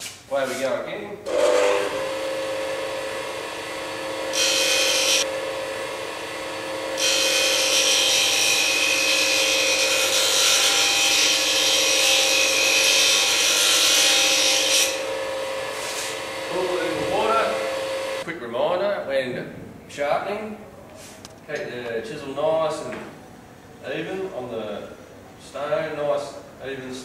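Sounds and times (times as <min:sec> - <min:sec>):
bench grinder humming: 0:01.3 - 0:18.2.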